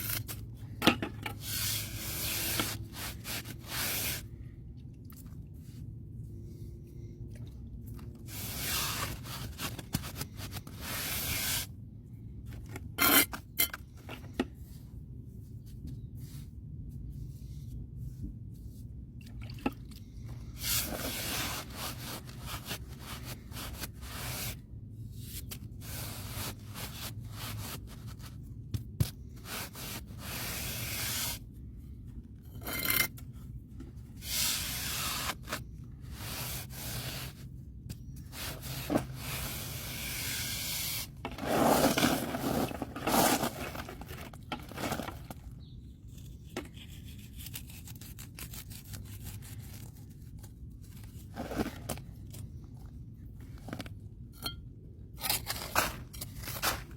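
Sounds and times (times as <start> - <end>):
tool scraping hard surface: 38.4 - 43.9.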